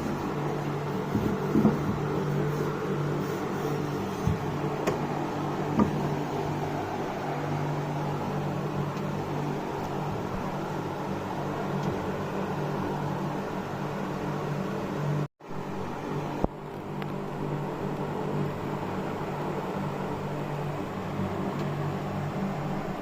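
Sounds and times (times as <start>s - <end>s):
microwave oven humming: 0.0s - 23.0s.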